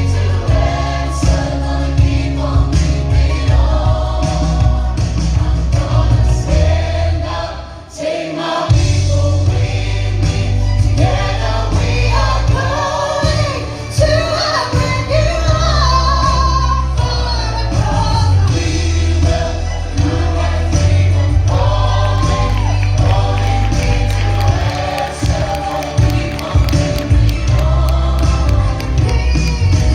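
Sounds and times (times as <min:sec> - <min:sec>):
choir singing: 0:00.0 - 0:29.9
accompaniment with strong bass line: 0:17.7 - 0:29.9.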